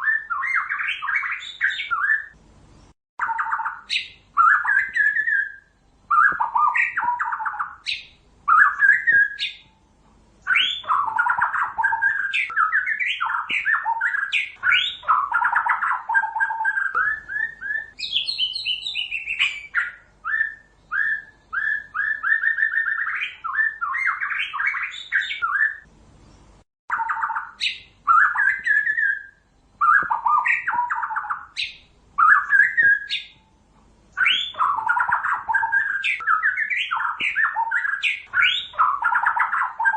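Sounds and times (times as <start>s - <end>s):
bird singing varied phrases: 0.0s - 39.9s.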